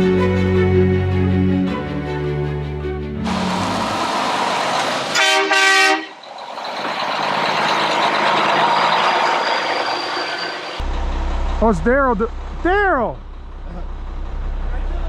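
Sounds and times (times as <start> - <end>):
vehicle horn toots: 5.1 - 6.2.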